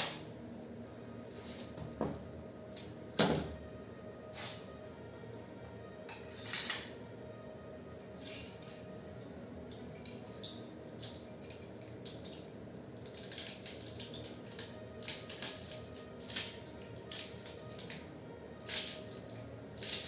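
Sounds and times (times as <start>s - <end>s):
low background music: 0.0s - 20.0s
metal pieces clinking: 13.0s - 17.9s.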